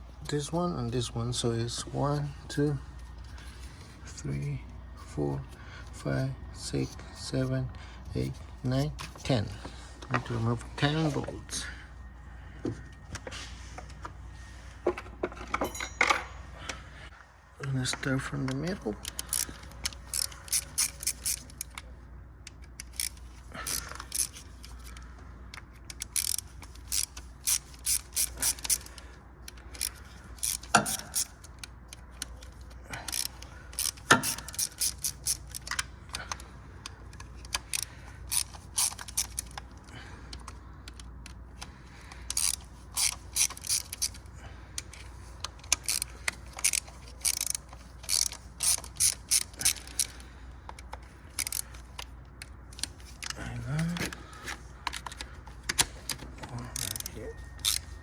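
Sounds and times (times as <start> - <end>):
ratchet wrench clicking: 19.0 - 21.8, 22.5 - 53.4, 54.8 - 58.0.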